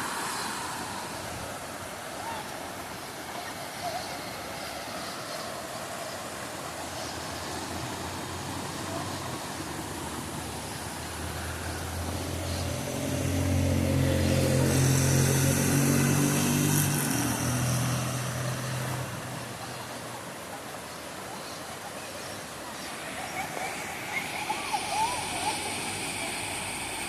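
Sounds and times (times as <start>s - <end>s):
waterfall rushing: 0.0s - 27.0s
vehicle engine passing: 11.0s - 20.1s.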